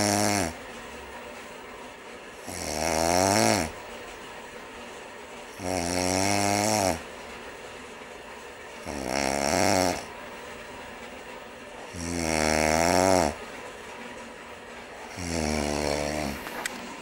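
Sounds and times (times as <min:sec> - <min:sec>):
man snoring: 0:00.0 - 0:00.6, 0:02.4 - 0:03.8, 0:05.6 - 0:07.0, 0:08.8 - 0:10.1, 0:12.0 - 0:13.4, 0:15.1 - 0:16.5
steady hiss: 0:00.0 - 0:17.0.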